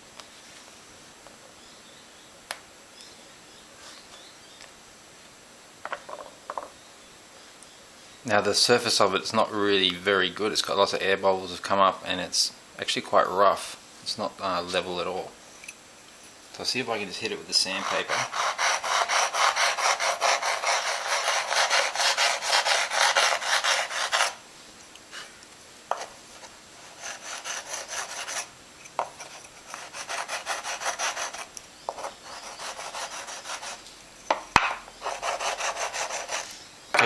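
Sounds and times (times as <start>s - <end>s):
sandpaper scraping plaster: 17.6s - 24.4s, 26.0s - 28.5s, 29.2s - 33.8s, 35.0s - 36.6s.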